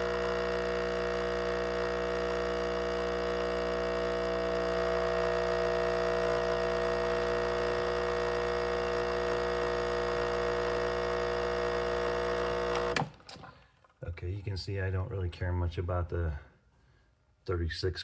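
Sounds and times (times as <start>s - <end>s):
espresso machine pump hum: 0.0s - 13.1s.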